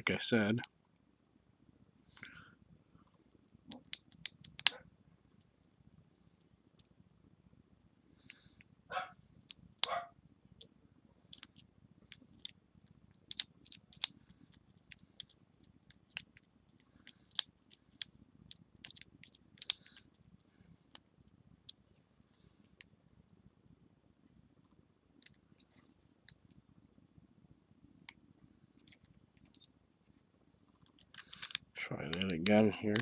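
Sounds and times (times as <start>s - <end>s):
lock pick clicking: 3.7s - 4.8s, 13.3s - 14.2s, 17.0s - 20.0s, 30.9s - 33.0s.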